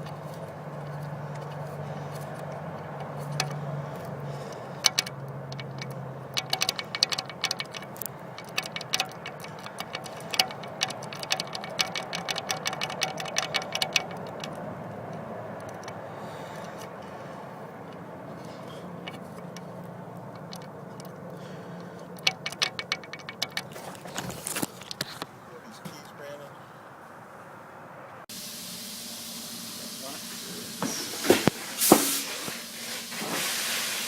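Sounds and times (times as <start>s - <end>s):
sharp metallic clicks and taps: 0.0s - 25.3s.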